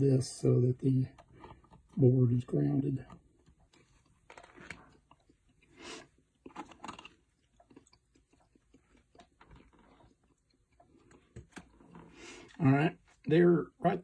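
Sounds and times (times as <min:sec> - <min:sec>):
rustling crinkling scrapes: 0:03.4 - 0:07.2.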